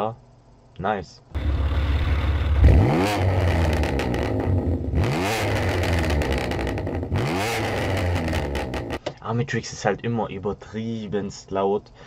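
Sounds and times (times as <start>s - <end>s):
car engine revving: 1.4s - 9.0s.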